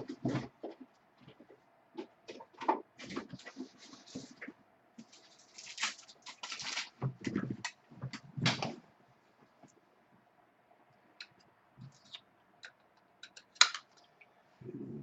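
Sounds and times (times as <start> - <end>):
cards and packaging rustling: 3.0 - 7.8.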